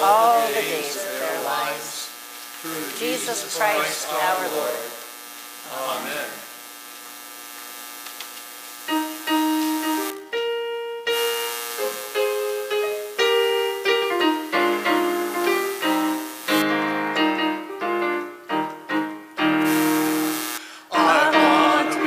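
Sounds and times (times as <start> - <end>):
people singing: 0.0 - 2.1, 2.7 - 5.0, 20.9 - 22.0
piano playing a hymn: 8.9 - 22.0.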